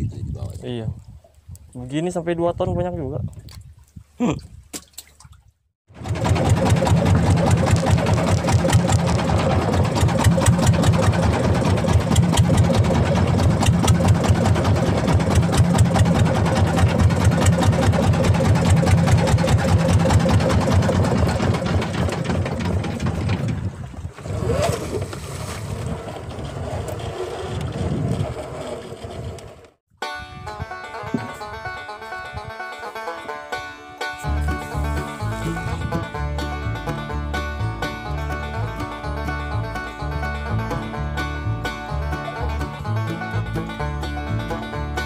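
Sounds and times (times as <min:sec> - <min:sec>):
motorboat engine running: 0:05.9 - 0:29.8, 0:34.2 - 0:45.0.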